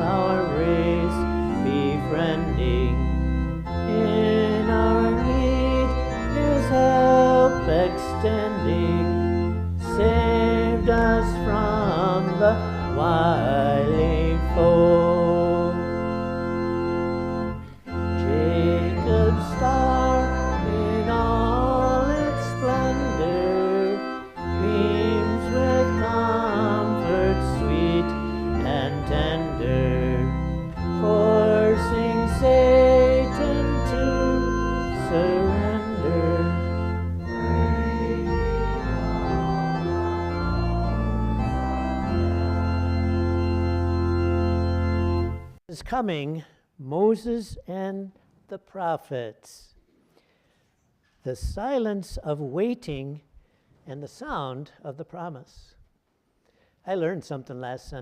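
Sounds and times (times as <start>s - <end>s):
congregation singing a hymn: 0.0s - 42.8s
church organ chords: 0.0s - 46.2s.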